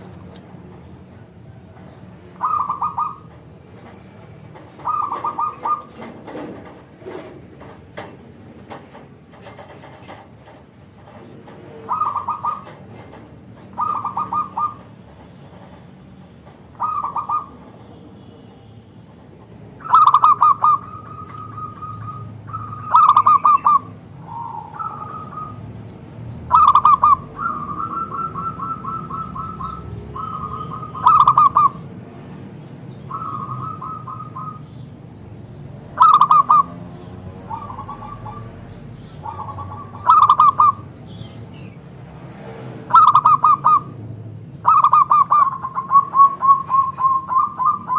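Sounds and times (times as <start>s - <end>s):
dove cooing: 1.2s - 3.9s, 4.6s - 7.6s, 11.4s - 15.0s, 16.7s - 17.8s, 19.8s - 25.8s, 26.4s - 32.0s, 33.0s - 34.8s, 35.9s - 41.0s, 42.8s - 44.0s, 44.6s - 47.9s.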